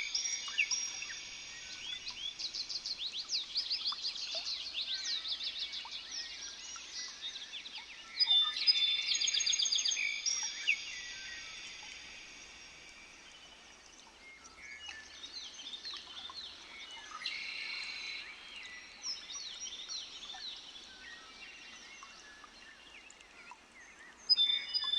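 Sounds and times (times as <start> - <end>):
birds chirping and trilling: 0.0 - 13.5
loud birdsong with sustained notes: 0.0 - 24.9.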